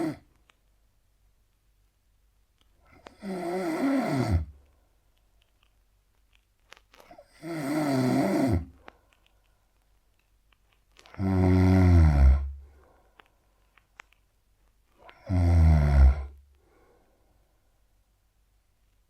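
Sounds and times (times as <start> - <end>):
man snoring: 0.0 - 0.2, 3.1 - 4.6, 7.2 - 8.7, 11.2 - 12.6, 15.2 - 16.4
faint small clicks: 0.2 - 0.8, 1.5 - 3.2, 4.5 - 7.2, 8.6 - 11.2, 12.6 - 15.3.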